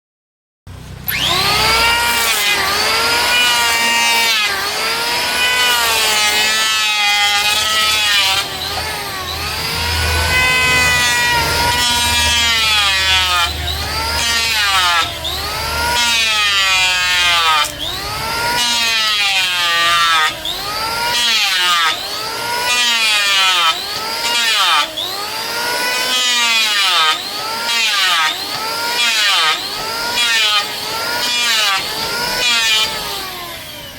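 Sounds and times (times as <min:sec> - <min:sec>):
woodworking power tool motor whine: 0:00.7 - 0:33.9.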